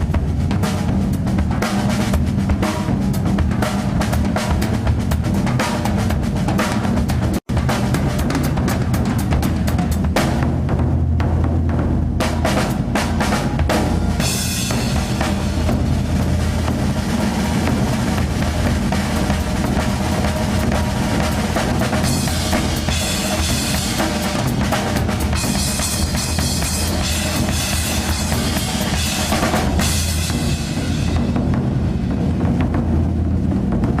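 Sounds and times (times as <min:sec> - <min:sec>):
drum kit snare and kick: 0:00.0 - 0:34.0
taiko drum strokes: 0:00.0 - 0:34.0
heavy cymbal wash: 0:12.4 - 0:32.7.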